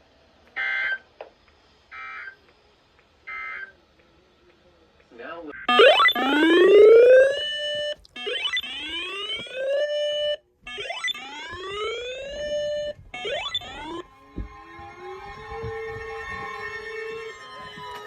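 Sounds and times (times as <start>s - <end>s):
rising siren whoop: 5.7s - 7.5s, 10.8s - 18.0s
steady high alert tone: 5.7s - 10.0s, 10.7s - 18.0s.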